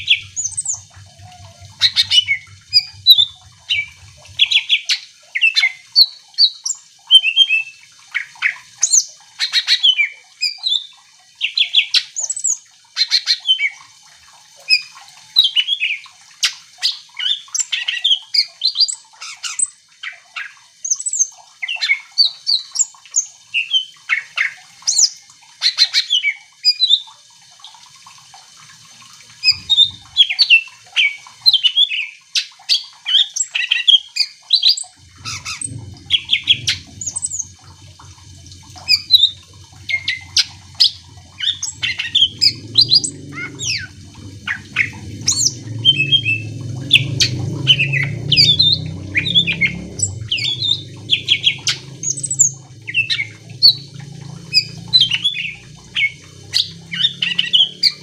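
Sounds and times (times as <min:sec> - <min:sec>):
low rumble: 0:00.0 - 0:04.6, 0:35.0 - 0:57.8
bird singing chirps and whistles: 0:00.0 - 0:12.5, 0:38.8 - 0:53.8.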